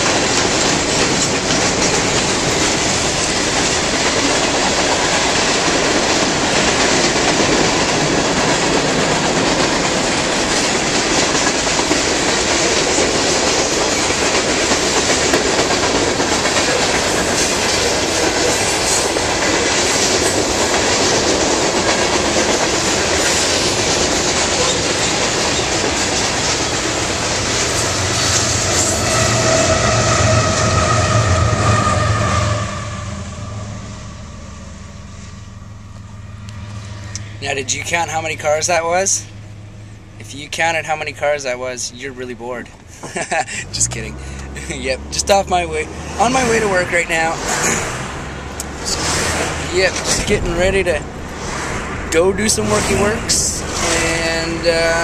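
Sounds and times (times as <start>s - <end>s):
train wheels clattering on rails: 0.0s - 31.6s
steady tones: 0.0s - 55.0s.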